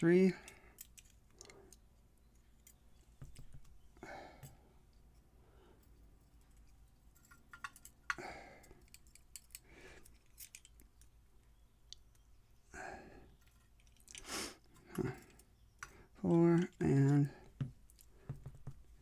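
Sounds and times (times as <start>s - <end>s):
metallic clicks of lock parts: 0.4s - 2.8s, 5.8s - 11.2s, 13.4s - 18.1s.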